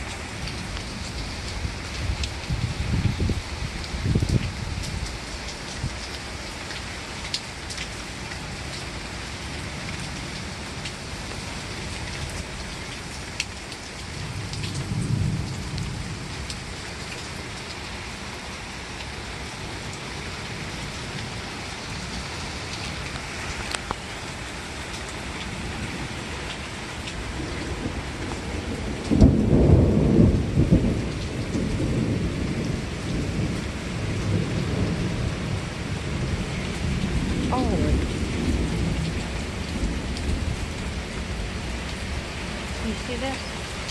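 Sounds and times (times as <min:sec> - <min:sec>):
heavy rain: 0:00.0 - 0:43.9
raindrops tapping: 0:00.0 - 0:43.9
low roll of thunder: 0:00.5 - 0:05.1, 0:14.1 - 0:17.2, 0:27.2 - 0:43.1
loud thunderclap: 0:14.2 - 0:16.3, 0:27.4 - 0:40.7.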